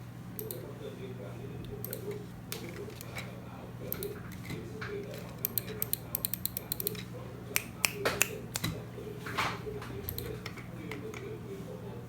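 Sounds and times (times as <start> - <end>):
mechanical keyboard typing: 3.9 - 8.8.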